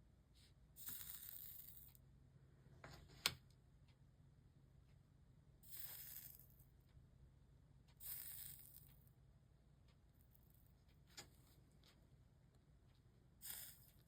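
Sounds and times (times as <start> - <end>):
soldering iron sizzling: 13.4 - 14.0.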